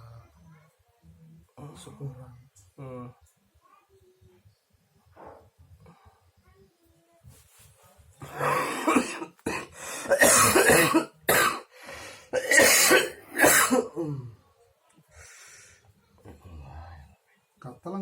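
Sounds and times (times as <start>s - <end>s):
person coughing: 8.3s - 11.7s, 12.4s - 14.2s.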